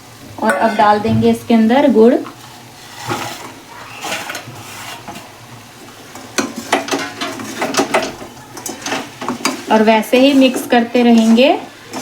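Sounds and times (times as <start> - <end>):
spoon knocking against pan: 0.4 - 1.4
spoon stirring and scraping pan: 0.4 - 12.0.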